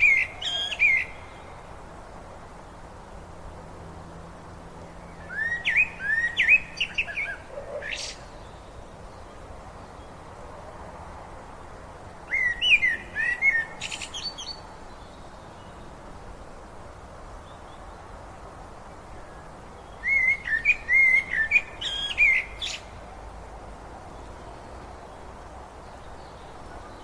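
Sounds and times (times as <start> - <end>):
songbird warbling: 0.0 - 1.6, 5.2 - 8.7, 12.3 - 15.6, 19.2 - 23.0
river water rushing: 0.0 - 17.6, 18.2 - 27.0.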